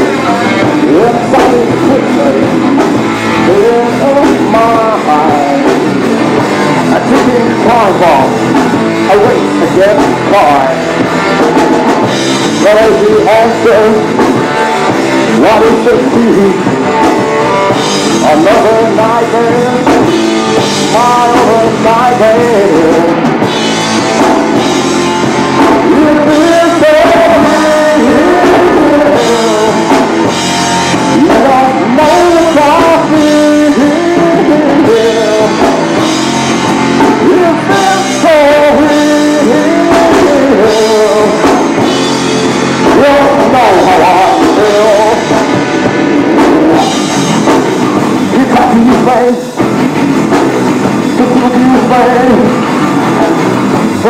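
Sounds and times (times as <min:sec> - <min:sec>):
person singing: 0:00.0 - 0:54.0
rock band playing live: 0:00.0 - 0:54.0.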